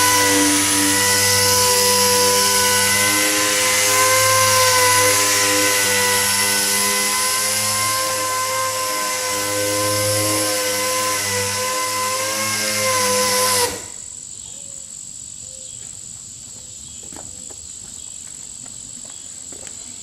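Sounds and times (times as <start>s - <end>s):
air sander whining: 0.0s - 14.1s.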